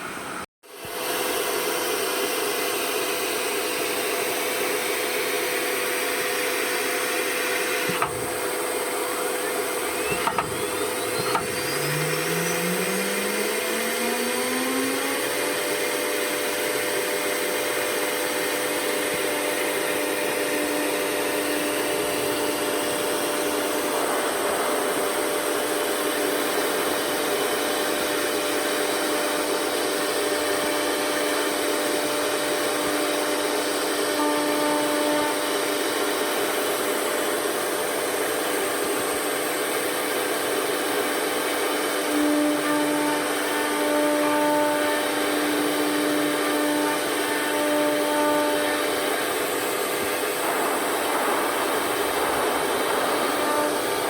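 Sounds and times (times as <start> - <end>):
router spindle whine: 0.0 - 54.0
rushing hiss of air: 6.4 - 28.8, 41.7 - 54.0.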